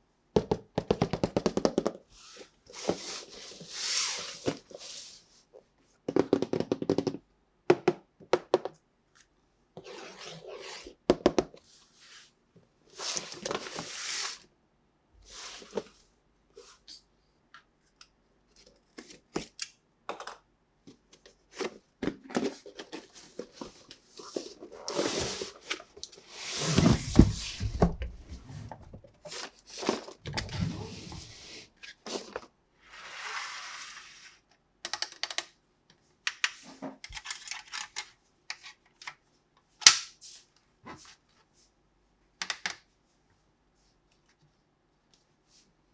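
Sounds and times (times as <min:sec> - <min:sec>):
plastic toy parts clicking: 0:37.0 - 0:39.2.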